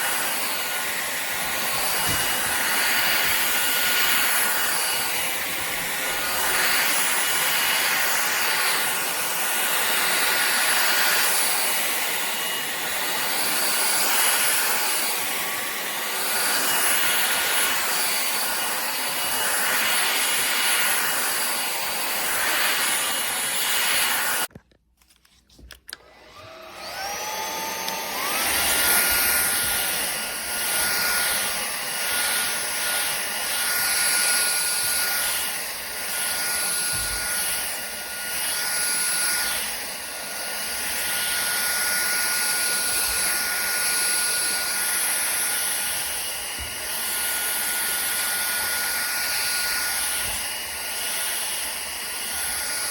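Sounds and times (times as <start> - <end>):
stick vacuum whining: 0.0 - 24.6, 25.5 - 52.9.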